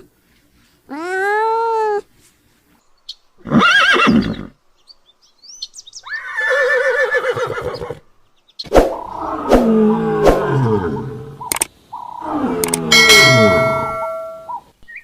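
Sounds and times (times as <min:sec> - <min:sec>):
animal wavering cries: 0:09.0 - 0:11.4
sharp clicks: 0:11.4 - 0:11.8, 0:12.6 - 0:12.9.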